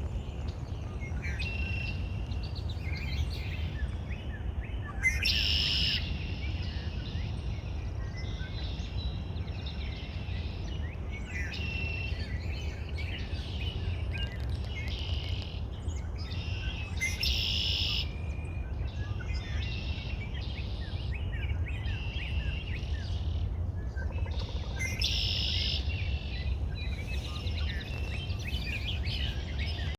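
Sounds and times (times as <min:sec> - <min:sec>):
birds chirping and singing: 0:11.3 - 0:29.9.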